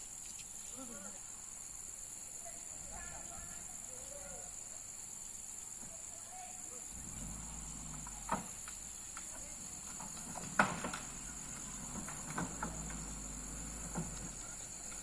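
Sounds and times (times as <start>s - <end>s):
vehicle engine running: 6.9s - 15.0s
knocks and clunks: 7.9s - 15.0s.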